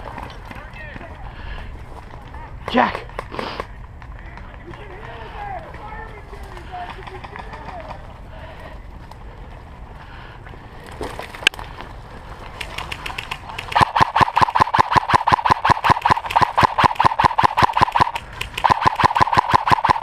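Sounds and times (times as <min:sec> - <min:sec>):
sharp click: 0:12.6 - 0:20.0
airsoft gun firing full-auto: 0:12.7 - 0:20.0.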